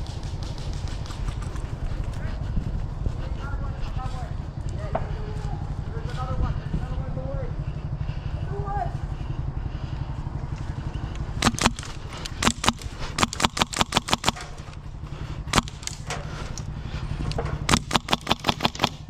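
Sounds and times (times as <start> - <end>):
airsoft guns firing: 0.0 - 1.8, 11.3 - 14.8, 15.4 - 16.4, 17.4 - 19.0
steady low rumble: 0.0 - 19.0.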